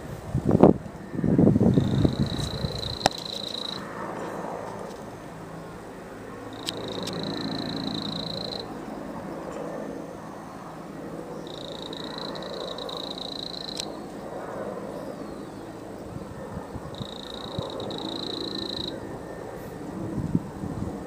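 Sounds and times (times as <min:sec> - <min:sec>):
low outdoor noise: 0:00.0 - 0:21.0
high steady animal call: 0:06.5 - 0:08.7, 0:11.4 - 0:13.9, 0:17.0 - 0:19.0.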